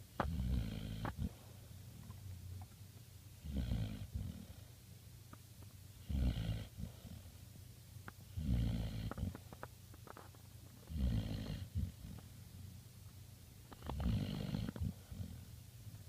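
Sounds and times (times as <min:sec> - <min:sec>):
puppy snoring: 0:00.2 - 0:01.5, 0:03.4 - 0:04.8, 0:06.0 - 0:07.4, 0:08.3 - 0:09.7, 0:10.8 - 0:12.4, 0:13.7 - 0:15.6.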